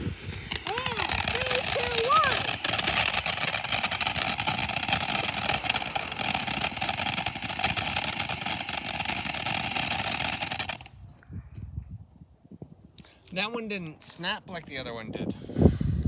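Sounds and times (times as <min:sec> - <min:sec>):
firework hissing and crackling: 0:00.0 - 0:11.0.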